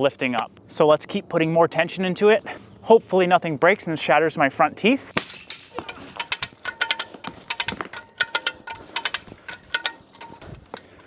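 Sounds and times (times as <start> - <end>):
ratchet strap clicking: 5.7 - 10.4.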